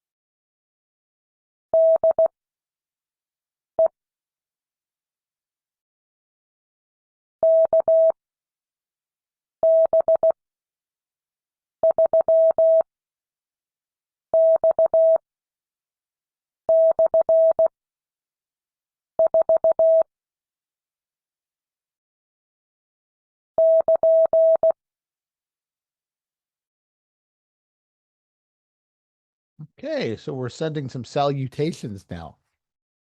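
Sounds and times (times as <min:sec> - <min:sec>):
morse code beeps: 0:07.4 - 0:08.2, 0:11.8 - 0:12.8, 0:14.4 - 0:15.2, 0:16.7 - 0:17.7, 0:19.2 - 0:20.1, 0:23.6 - 0:24.8.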